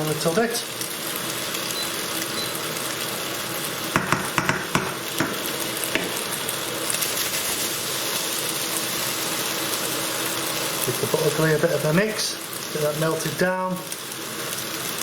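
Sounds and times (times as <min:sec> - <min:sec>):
chicken sizzling in oil: 0:00.0 - 0:15.0
spoon knocking against pan: 0:04.0 - 0:06.3.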